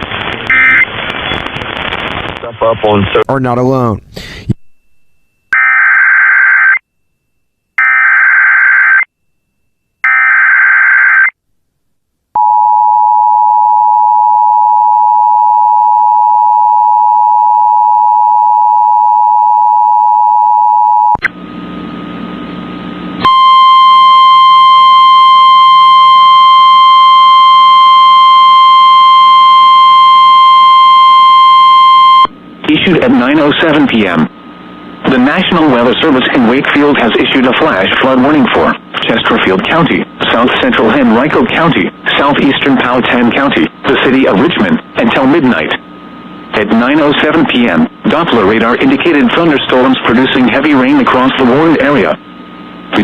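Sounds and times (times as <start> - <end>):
static: 0.0 - 4.6, 32.1 - 52.2.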